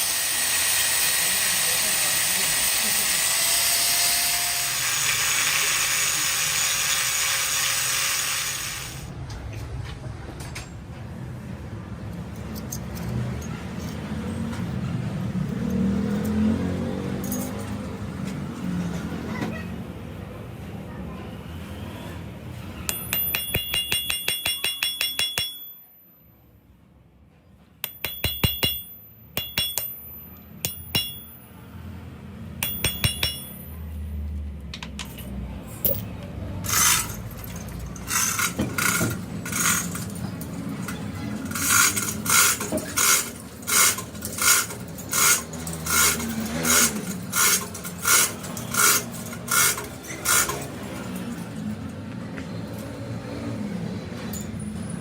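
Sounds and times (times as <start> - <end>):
low workshop hum: 0.0 - 55.0
metal-on-metal strikes: 22.9 - 25.9, 27.8 - 31.4, 32.6 - 33.8.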